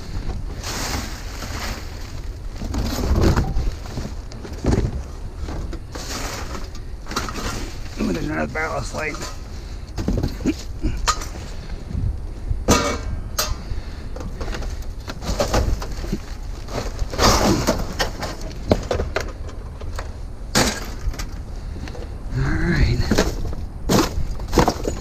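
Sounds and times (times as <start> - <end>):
scrap metal clattering: 0.0 - 11.6, 12.7 - 19.5, 23.0 - 25.0
steady low rumble: 0.0 - 25.0.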